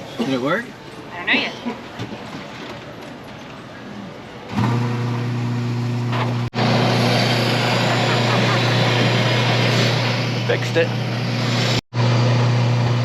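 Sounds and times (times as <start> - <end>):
coffee grinder running: 4.6 - 13.0.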